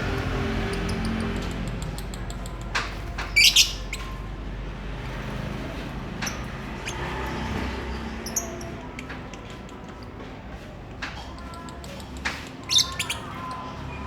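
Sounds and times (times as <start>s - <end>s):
lovebirds chirping: 0.2s - 4.3s, 6.2s - 9.8s, 11.5s - 14.0s.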